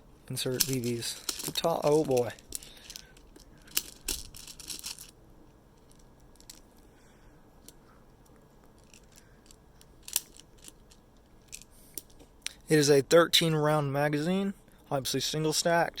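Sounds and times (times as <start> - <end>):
plastic bbs clicking and rattling: 0.5 - 5.2, 5.8 - 6.8, 7.6 - 12.2.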